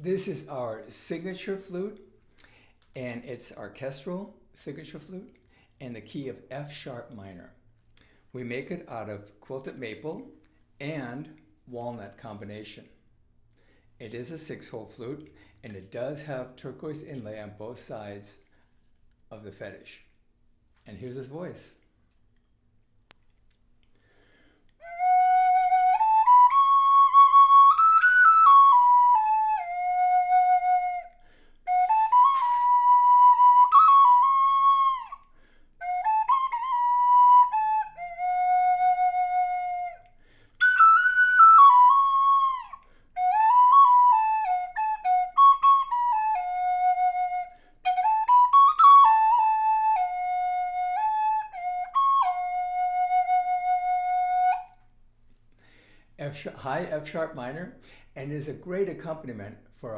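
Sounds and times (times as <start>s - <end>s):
flute playing slow melody: 24.8s - 54.9s.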